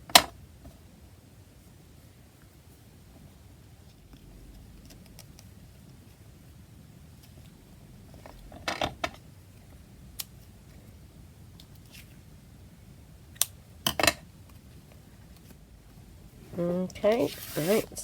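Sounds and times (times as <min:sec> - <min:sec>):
paper rustling: 0:17.0 - 0:18.0.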